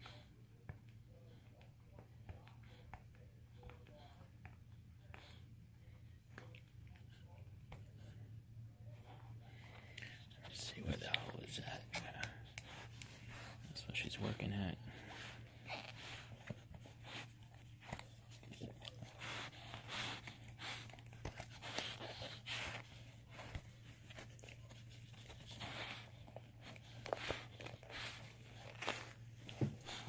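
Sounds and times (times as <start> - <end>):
dog chewing and tearing toy: 14.9 - 30.0.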